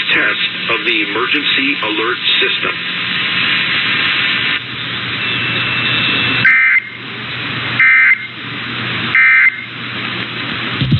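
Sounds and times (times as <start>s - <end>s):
radio static hiss: 0.0s - 6.8s.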